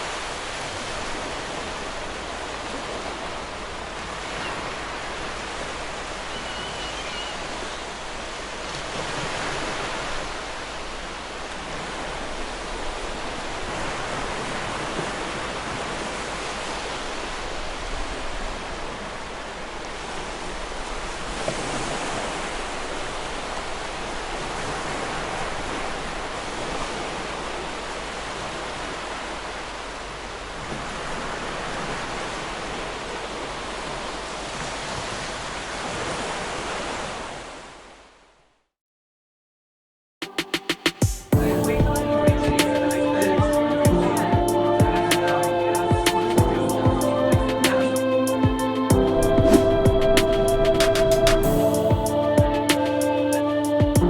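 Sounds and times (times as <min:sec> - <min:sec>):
waves breaking: 0:00.0 - 0:37.8, 0:40.3 - 0:54.0
faint gull call: 0:06.3 - 0:07.8.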